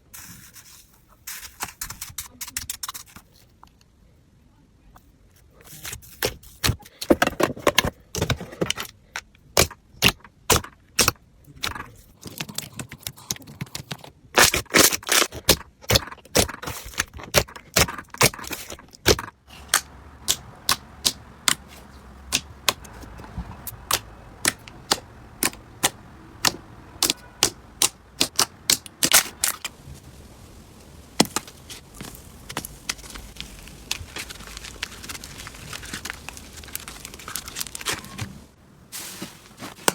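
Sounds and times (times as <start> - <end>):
slime clicking and popping: 23.9 - 29.3.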